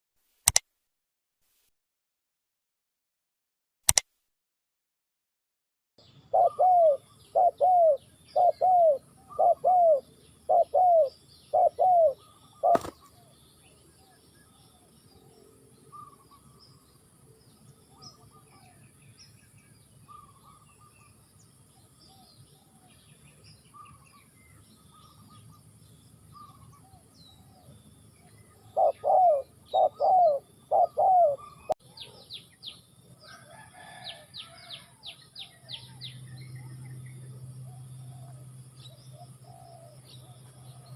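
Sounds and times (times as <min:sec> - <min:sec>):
sharp click: 0:00.4 - 0:00.7, 0:03.9 - 0:04.1
small birds chirping: 0:06.0 - 0:40.9
dove cooing: 0:06.2 - 0:13.4, 0:26.3 - 0:32.2, 0:37.2 - 0:40.9.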